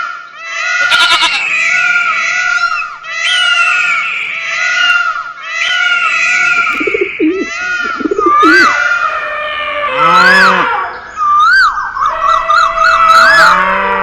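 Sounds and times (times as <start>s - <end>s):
overlapping animal calls: 0.8s - 2.6s, 5.6s - 9.1s
rising and falling animal call: 6.0s - 10.9s.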